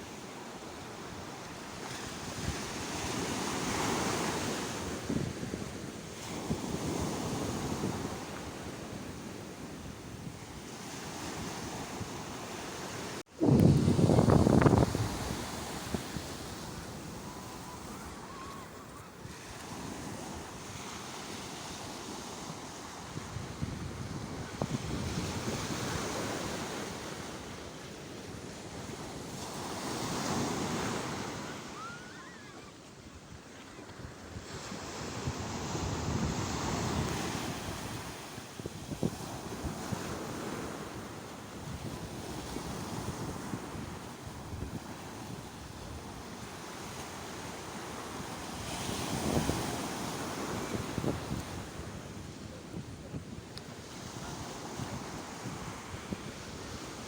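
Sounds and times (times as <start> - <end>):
sea waves breaking: 10.7 - 32.8
wind buffeting microphone: 13.3 - 20.8, 22.1 - 27.2, 33.3 - 47.0, 48.2 - 57.0.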